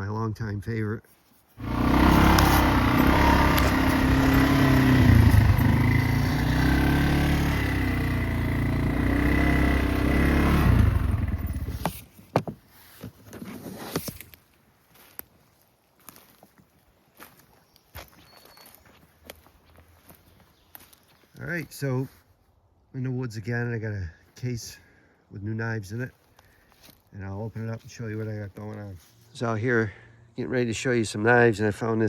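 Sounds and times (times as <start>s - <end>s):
small vehicle engine revving: 1.6s - 12.0s
clicks and scrapes: 11.7s - 14.4s.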